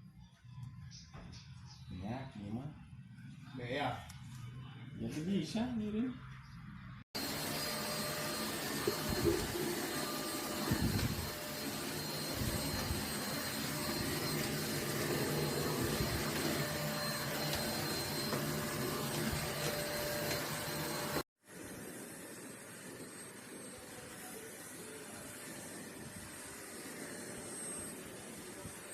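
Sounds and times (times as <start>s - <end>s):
handheld vacuum cleaner running: 7.2s - 28.9s.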